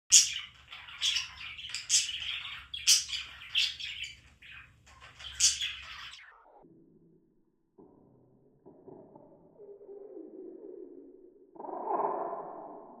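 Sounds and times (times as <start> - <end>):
budgie chirping and squawking: 0.1 - 6.2.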